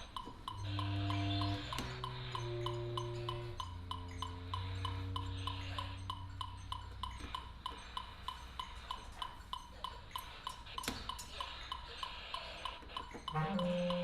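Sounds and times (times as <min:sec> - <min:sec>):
sharp clicks: 0:00.0 - 0:14.0
steady even ticking: 0:00.0 - 0:14.0
low hum: 0:00.5 - 0:07.8.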